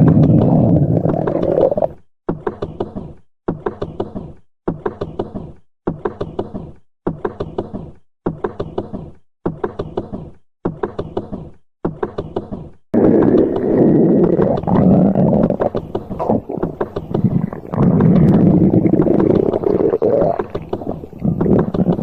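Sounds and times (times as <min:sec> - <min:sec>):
stomach gurgling: 0:00.0 - 0:02.0, 0:13.0 - 0:22.0.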